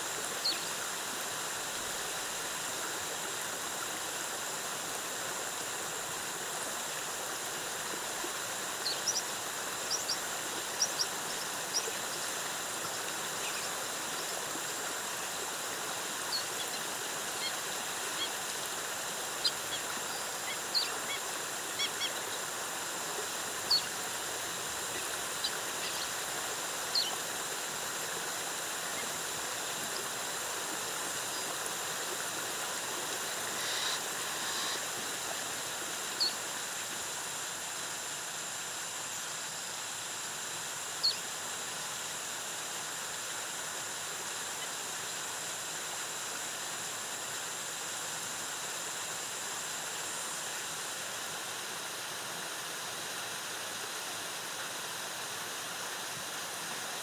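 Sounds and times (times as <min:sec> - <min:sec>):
waterfall rushing: 0:07.1 - 0:36.1.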